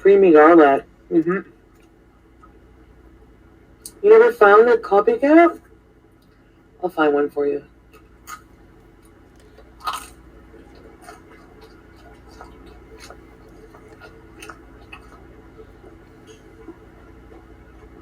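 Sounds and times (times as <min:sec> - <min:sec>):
low steady hum: 0:00.0 - 0:18.0
chewing with wet mouth smacks: 0:07.9 - 0:18.0.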